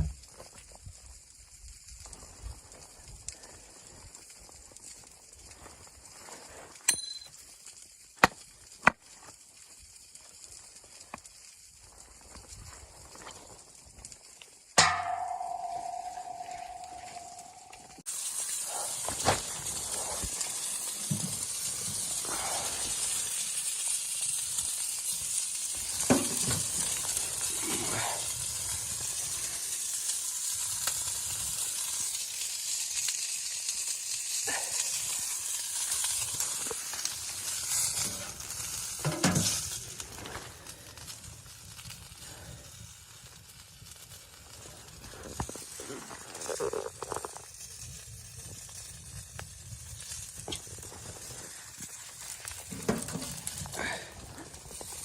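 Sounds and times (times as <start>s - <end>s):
food sizzling in a pan: 14.6s - 40.1s, 41.8s - 55.0s.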